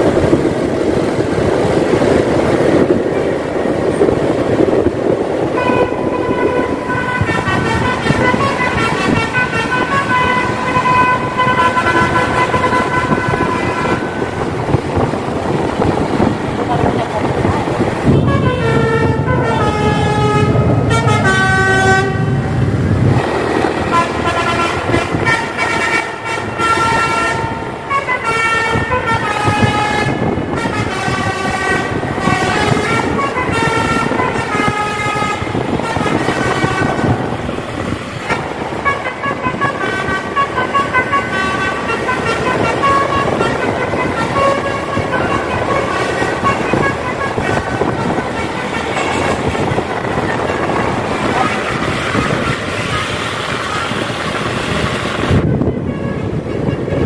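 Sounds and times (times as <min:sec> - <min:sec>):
heavy low rumble: 0:00.0 - 0:26.6, 0:41.6 - 0:57.0
vehicle and road noise: 0:00.0 - 0:57.0
bus horn playing a tune: 0:05.5 - 0:16.0, 0:18.0 - 0:57.0.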